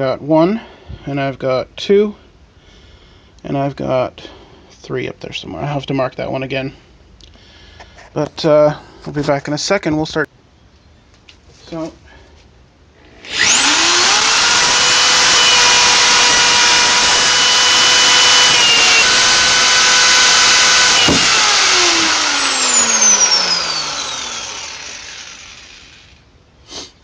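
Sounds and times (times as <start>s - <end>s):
power tool motor whine: 13.0s - 26.2s.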